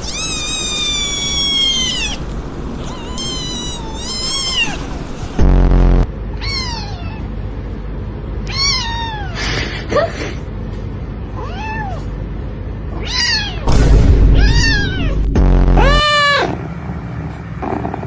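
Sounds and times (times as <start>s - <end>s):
kitten meowing: 0.0s - 2.2s, 2.8s - 4.9s, 6.3s - 7.3s, 8.4s - 9.4s, 11.4s - 12.1s, 13.0s - 13.7s, 15.8s - 16.6s.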